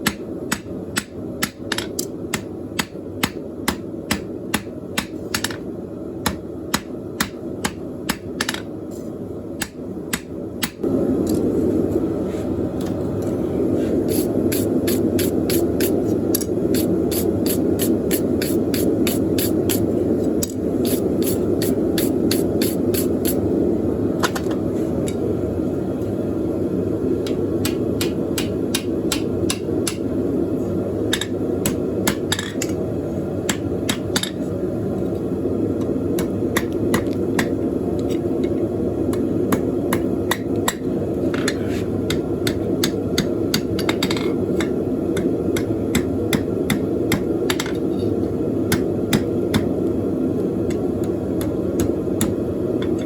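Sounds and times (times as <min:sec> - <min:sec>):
hammer striking steel on anvil: 0:00.0 - 0:05.6, 0:27.3 - 0:30.0.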